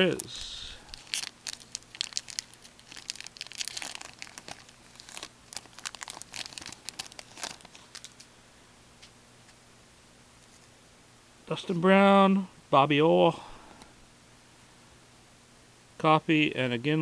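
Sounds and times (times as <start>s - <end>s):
wrapper crinkling: 0.0s - 8.3s
cards being handled: 1.0s - 8.3s.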